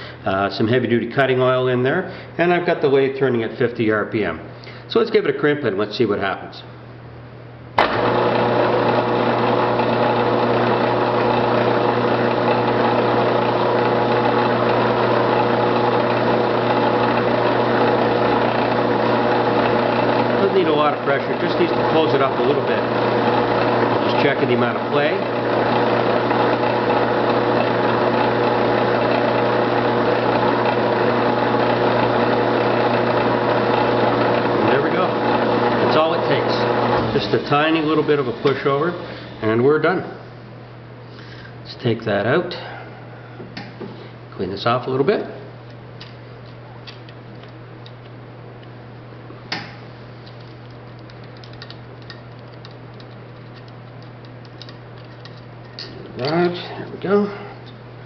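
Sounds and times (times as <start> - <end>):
metal lathe motor hum: 7.8 - 39.7
metal clicks: 49.5 - 56.5.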